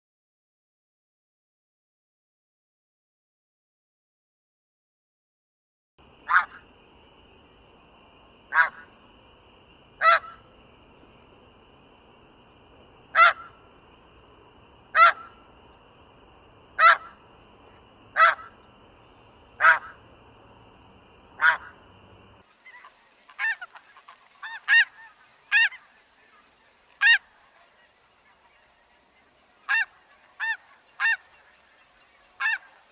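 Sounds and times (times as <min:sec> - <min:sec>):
faint steady hiss: 0:06.0 - 0:32.9
goose honking: 0:10.0 - 0:10.4, 0:13.1 - 0:13.5, 0:14.9 - 0:15.4, 0:16.8 - 0:17.2, 0:18.2 - 0:18.5, 0:19.6 - 0:20.0, 0:21.4 - 0:21.8, 0:22.6 - 0:27.3, 0:29.6 - 0:31.5, 0:32.4 - 0:32.9.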